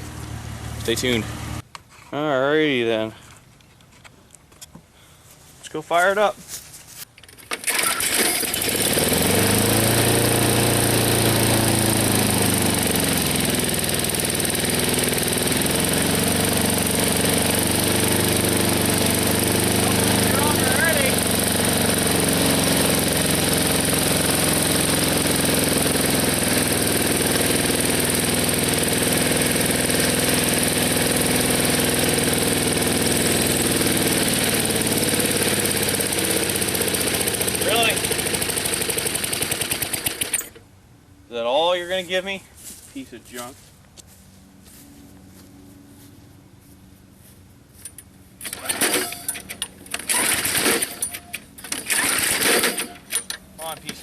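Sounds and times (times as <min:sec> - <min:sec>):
lawn mower engine running: 0:00.0 - 0:01.6, 0:07.2 - 0:40.6, 0:46.8 - 0:54.0.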